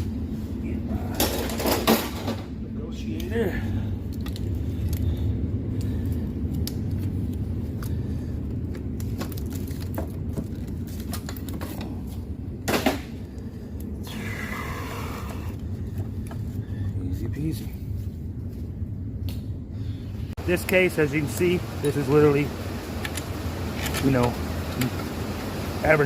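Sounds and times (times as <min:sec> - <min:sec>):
steady low rumble: 0:00.0 - 0:26.0.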